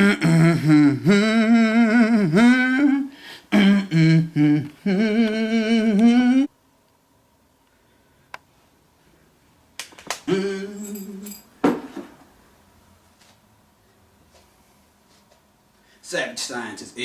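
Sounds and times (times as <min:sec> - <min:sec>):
person humming: 0:00.0 - 0:06.5, 0:10.3 - 0:11.5.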